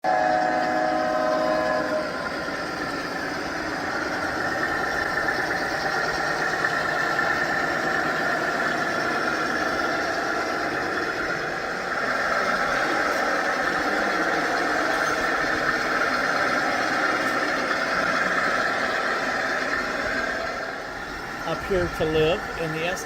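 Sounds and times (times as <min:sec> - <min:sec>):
model train horn: 0:00.0 - 0:05.5, 0:11.8 - 0:20.6
model diesel engine sound: 0:00.0 - 0:23.0.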